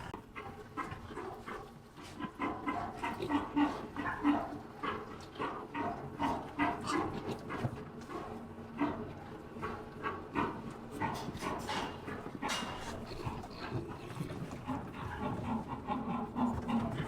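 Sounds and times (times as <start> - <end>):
wild boar grunting: 0.0 - 17.0.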